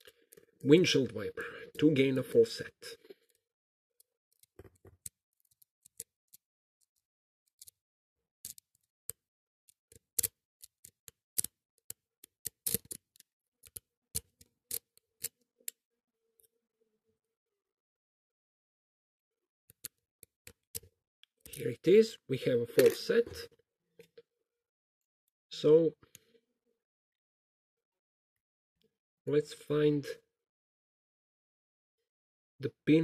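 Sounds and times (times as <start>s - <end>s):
lock pick clicking in padlock: 8.4s - 15.4s.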